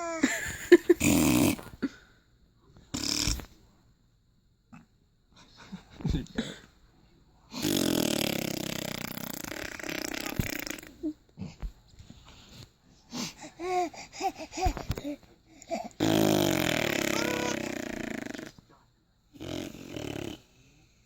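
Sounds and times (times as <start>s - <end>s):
person blowing mouth fart noise: 1.0s - 1.8s, 3.0s - 3.5s, 7.6s - 11.0s, 16.0s - 18.5s
baby laughing: 16.8s - 17.8s.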